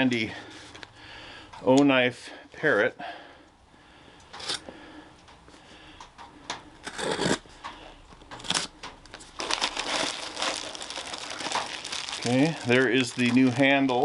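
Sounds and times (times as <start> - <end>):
knife scraping packing tape: 6.8 - 7.4.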